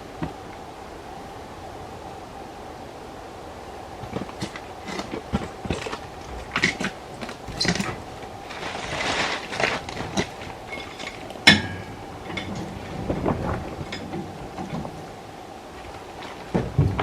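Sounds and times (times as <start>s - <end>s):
light clinks of hard objects: 6.5s - 12.7s
loud metallic clank: 7.4s - 12.0s.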